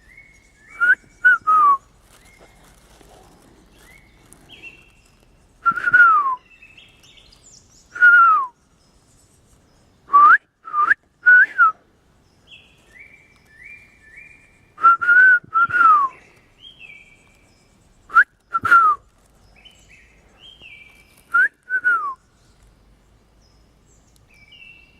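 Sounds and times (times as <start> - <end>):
bird whistling: 0.0 - 1.9, 5.6 - 8.6, 12.5 - 17.2, 18.1 - 22.3
person whistling sliding notes: 5.6 - 6.4, 14.8 - 16.2, 18.1 - 19.0, 21.3 - 22.2.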